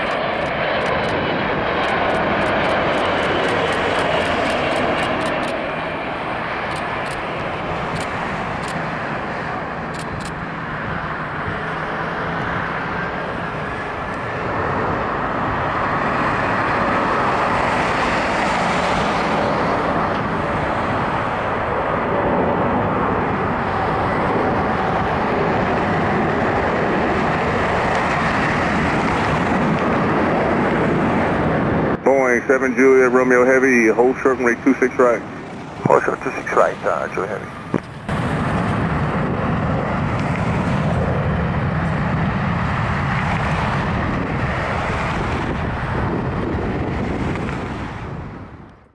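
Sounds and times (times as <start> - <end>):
jet engines taxiing: 0.0 - 48.9.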